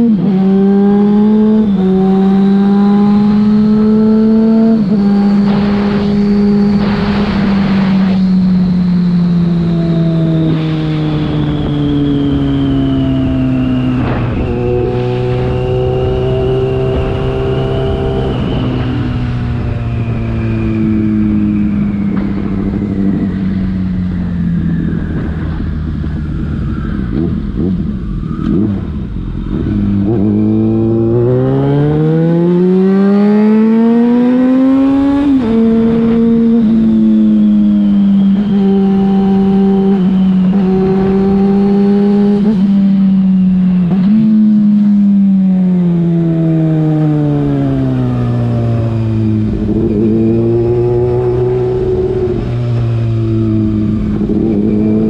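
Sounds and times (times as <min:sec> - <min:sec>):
motorcycle engine revving: 0:00.0 - 0:55.0
rushing noise: 0:04.8 - 0:31.4.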